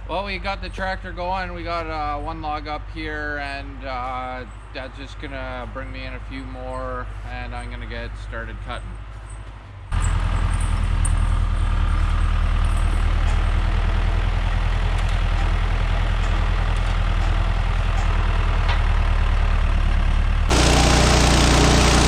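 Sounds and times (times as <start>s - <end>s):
tractor diesel engine running: 9.9s - 22.0s.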